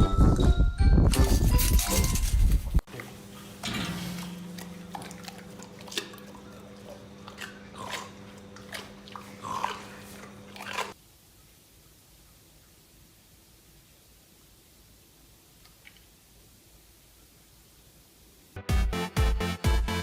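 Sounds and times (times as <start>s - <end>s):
animal chewing: 4.2s - 11.0s.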